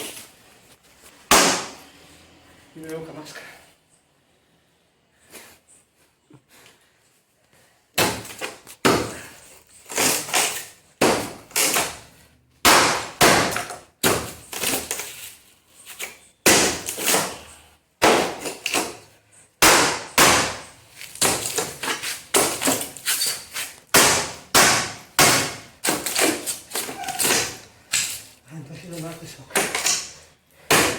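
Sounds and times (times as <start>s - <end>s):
hammer striking masonry: 1.3s - 1.8s, 11.0s - 12.0s, 12.6s - 14.8s, 16.4s - 17.4s, 18.0s - 19.0s, 19.6s - 23.0s, 23.9s - 28.2s, 29.5s - 30.9s.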